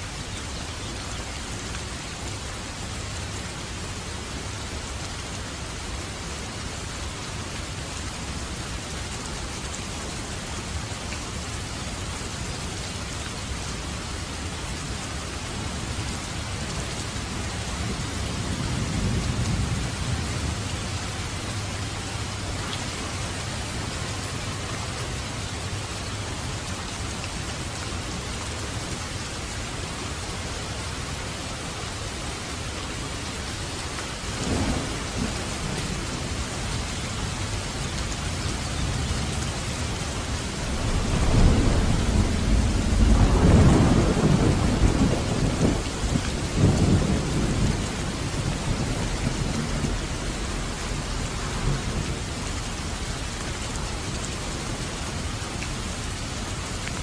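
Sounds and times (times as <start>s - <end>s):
heavy rain: 0.0s - 57.0s
rolling thunder: 34.4s - 36.4s, 40.4s - 52.3s.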